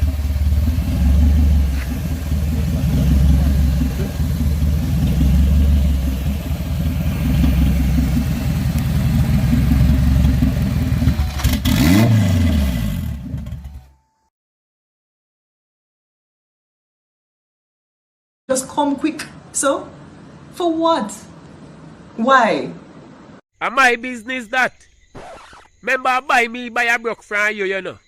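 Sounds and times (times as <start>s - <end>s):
car engine exhaust rumble: 0.0s - 13.9s.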